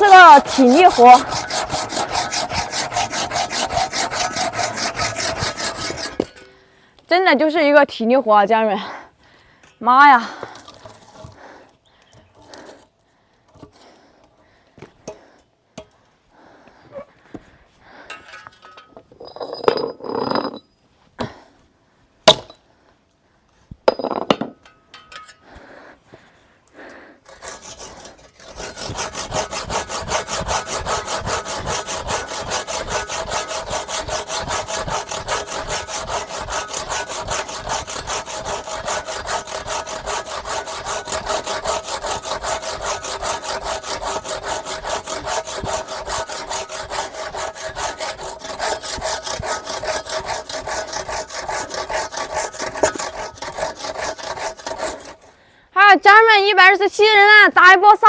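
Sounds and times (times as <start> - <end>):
hand saw cutting wood: 0.0 - 6.5, 10.4 - 11.4, 27.2 - 55.4
knocks and scrapes: 0.1 - 6.6.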